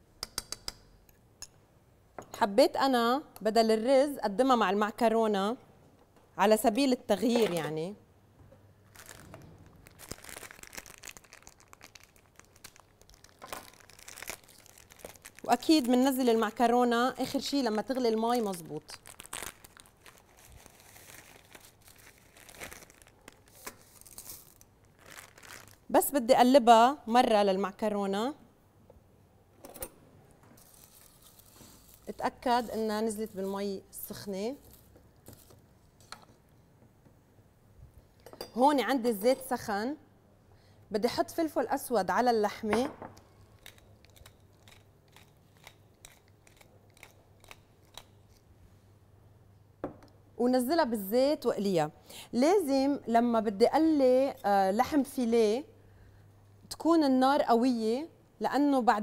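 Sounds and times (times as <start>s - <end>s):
pepper mill grinding: 30.6s - 33.7s, 43.6s - 48.4s.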